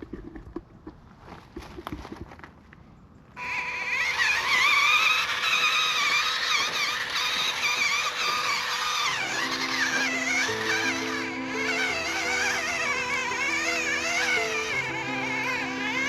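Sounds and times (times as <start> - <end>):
electric motor and gears whining: 3.4 - 16.0
music: 9.1 - 16.0.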